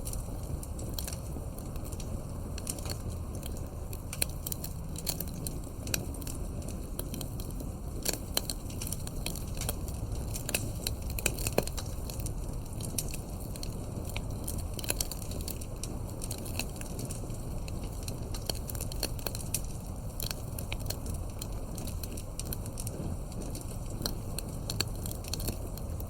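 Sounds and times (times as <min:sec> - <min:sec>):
wood fire crackling: 0:00.0 - 0:26.0.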